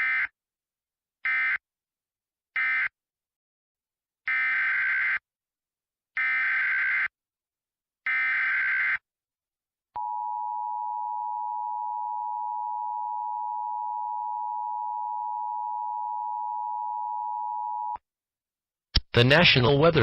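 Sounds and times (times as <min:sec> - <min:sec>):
buzzing data squawk: 0:04.4 - 0:05.2, 0:06.2 - 0:07.1, 0:08.1 - 0:09.0.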